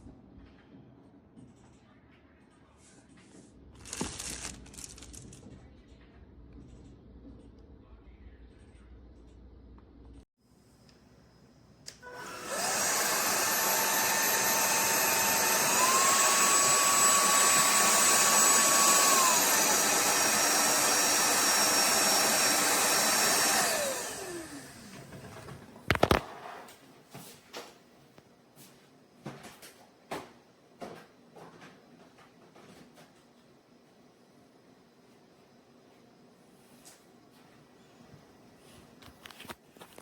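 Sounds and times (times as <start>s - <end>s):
stick vacuum whining: 11.9s - 26.2s.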